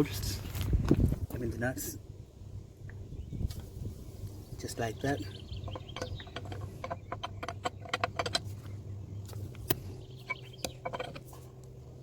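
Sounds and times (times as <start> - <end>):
steady low hum: 0.0 - 12.0
metallic clicks of spanner and bolts: 5.6 - 8.5.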